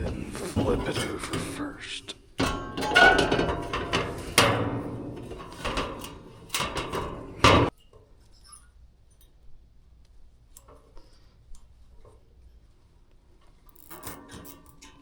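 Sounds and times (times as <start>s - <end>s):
metal clanks and knocks: 0.0s - 1.6s, 2.3s - 8.0s.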